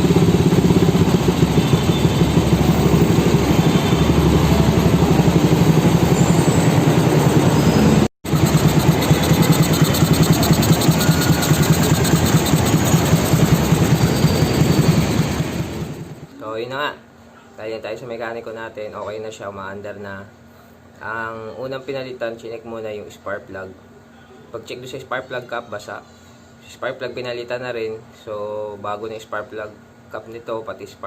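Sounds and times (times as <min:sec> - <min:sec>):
motorcycle engine running: 0:00.0 - 0:16.3.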